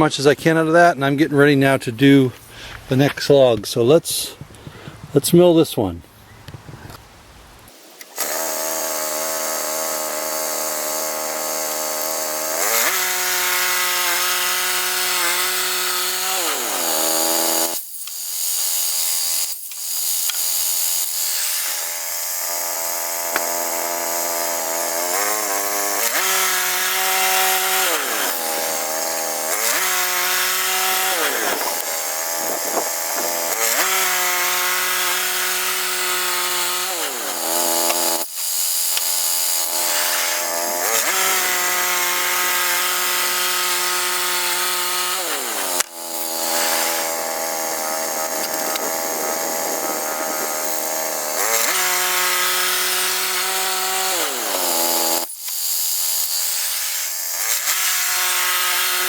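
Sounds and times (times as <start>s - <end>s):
band blade hissing in wood: 15.1s - 58.8s.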